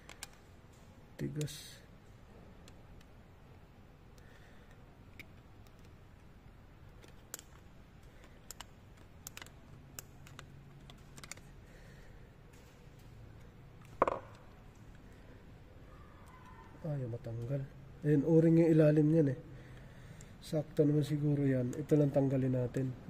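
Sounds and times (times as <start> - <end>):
parts clicking and tapping: 0.0 - 15.1.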